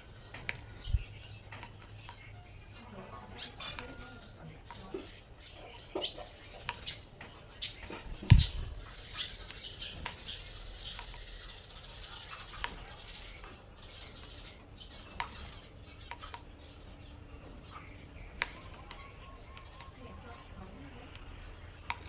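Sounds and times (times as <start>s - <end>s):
wing flaps: 0.2s - 1.2s, 5.9s - 11.2s, 18.2s - 19.2s.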